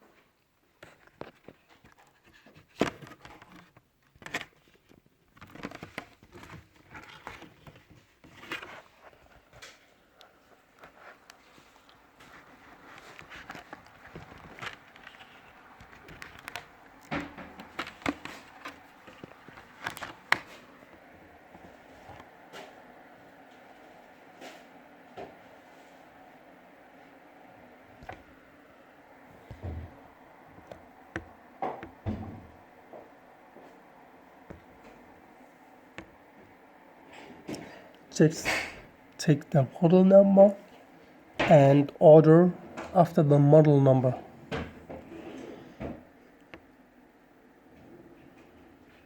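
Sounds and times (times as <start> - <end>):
rustling and scraping: 0.8 - 26.2.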